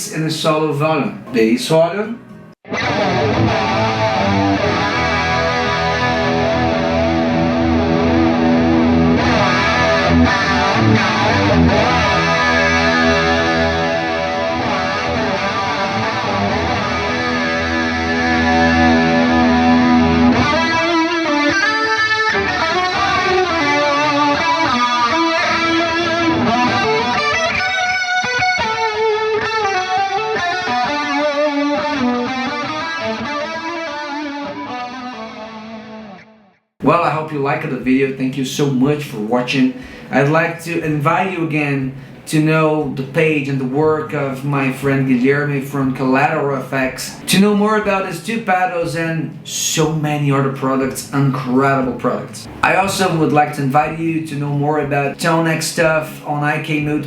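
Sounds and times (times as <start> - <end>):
overdriven electric guitar: 2.2 - 36.7.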